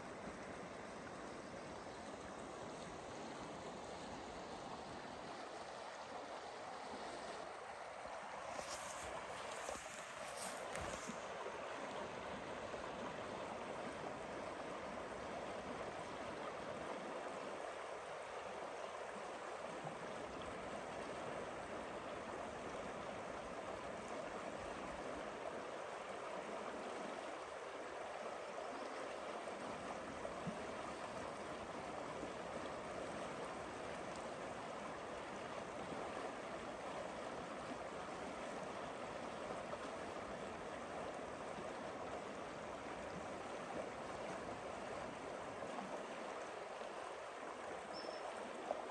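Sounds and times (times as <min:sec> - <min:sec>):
river water rushing: 0:00.0 - 0:48.9.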